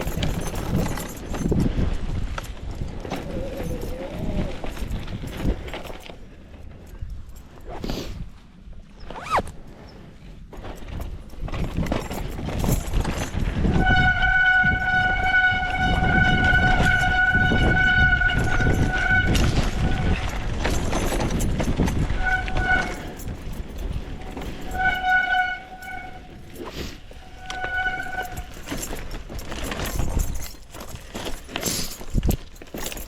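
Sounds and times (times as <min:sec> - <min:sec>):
wind and tyre rumble: 0:00.0 - 0:33.0
disc brakes squealing: 0:22.0 - 0:29.0.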